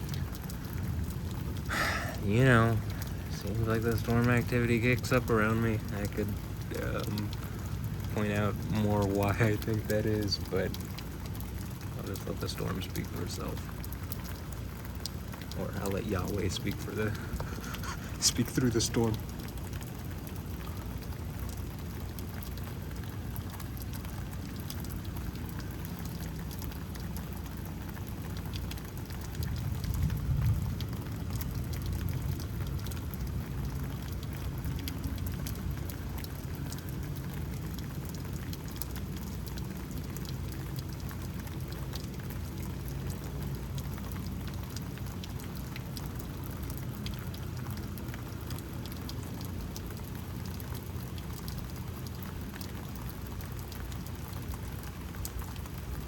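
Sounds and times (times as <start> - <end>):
steady rain: 0.0 - 56.0.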